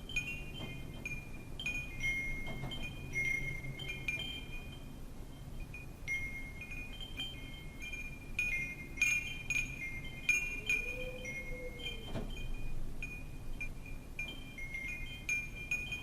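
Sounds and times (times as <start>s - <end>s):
wind chimes tinkling: 0.0s - 16.0s.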